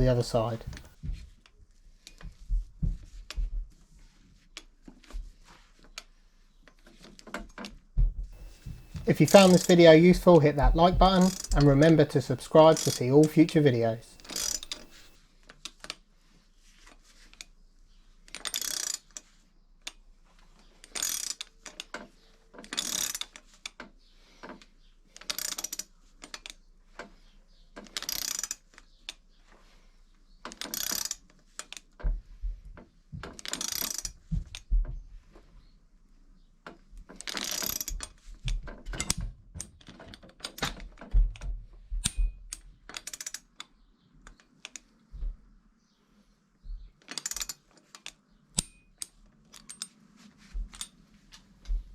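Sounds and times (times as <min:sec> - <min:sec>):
ratcheting clicks: 0:14.2 - 0:15.0.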